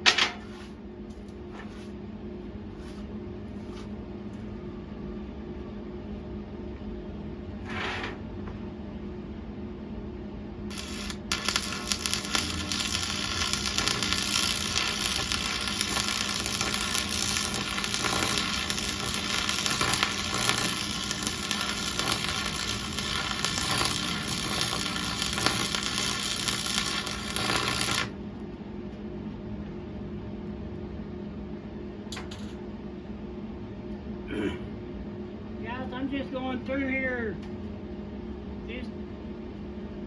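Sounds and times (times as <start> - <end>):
low steady hum: 0.0 - 40.0
welding arc crackling: 10.7 - 28.2.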